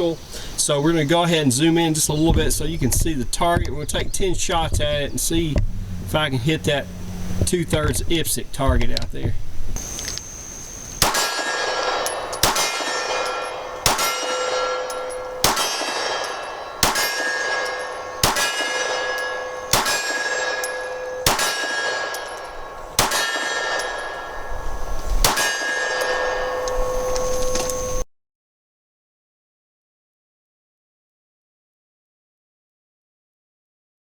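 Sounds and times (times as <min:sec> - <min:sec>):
pistol shots: 0:10.9 - 0:27.0
bullet clanging on steel target: 0:11.0 - 0:28.0.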